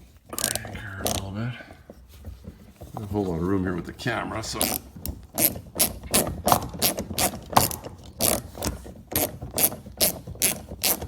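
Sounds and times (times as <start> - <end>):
hand ratchet clicking: 0.3 - 1.3, 4.6 - 11.0.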